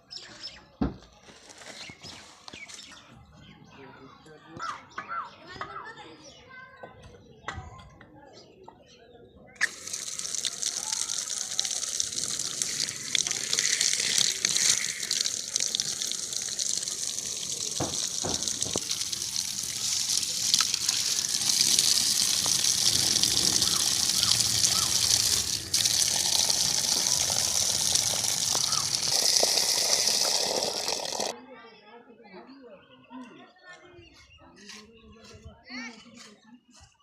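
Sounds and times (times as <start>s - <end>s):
water gushing from a pipe: 9.6s - 31.3s.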